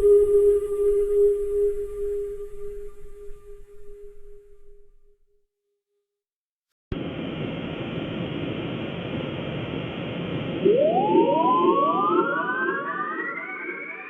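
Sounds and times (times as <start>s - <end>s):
rushing blizzard wind: 7.0s - 11.6s
howling wind whistle: 7.0s - 13.2s.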